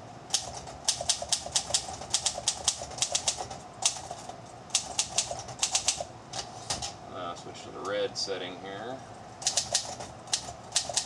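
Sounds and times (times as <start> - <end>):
manual typewriter keystrokes: 0.3 - 6.1, 9.4 - 11.0.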